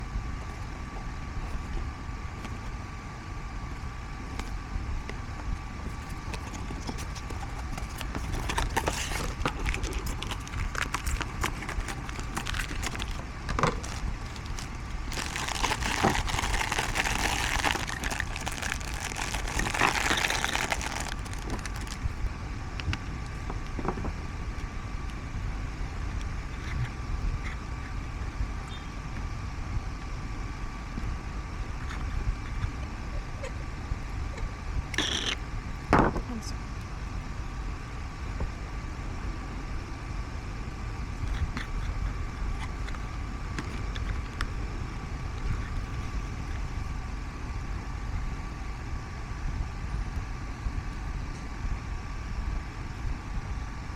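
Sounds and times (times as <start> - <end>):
steady low hum: 0.0 - 53.9
packaging rustling: 6.3 - 22.2.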